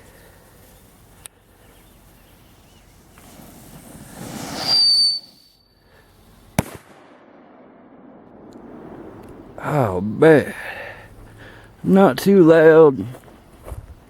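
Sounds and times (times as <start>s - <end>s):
firecracker hiss and whistle: 2.4s - 6.8s
firecracker bang: 3.2s - 5.4s, 6.6s - 9.7s.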